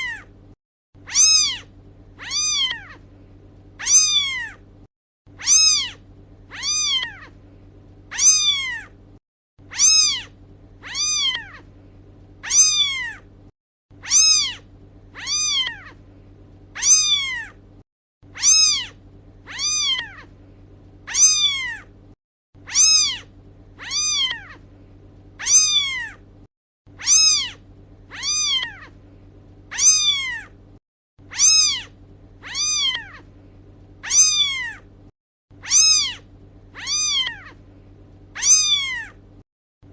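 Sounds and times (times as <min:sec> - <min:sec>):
kitten meowing: 0:00.0 - 0:00.3, 0:01.1 - 0:03.0, 0:03.8 - 0:04.6, 0:05.4 - 0:07.4, 0:08.1 - 0:08.9, 0:09.7 - 0:11.7, 0:12.4 - 0:13.2, 0:14.0 - 0:14.6, 0:15.2 - 0:16.0, 0:16.8 - 0:17.6, 0:18.3 - 0:20.3, 0:21.1 - 0:21.9, 0:22.7 - 0:24.6, 0:25.4 - 0:26.2, 0:27.0 - 0:29.0, 0:29.7 - 0:30.5, 0:31.3 - 0:33.3, 0:34.0 - 0:34.8, 0:35.6 - 0:36.2, 0:36.8 - 0:37.6, 0:38.4 - 0:39.2
faint low hum: 0:00.0 - 0:39.9.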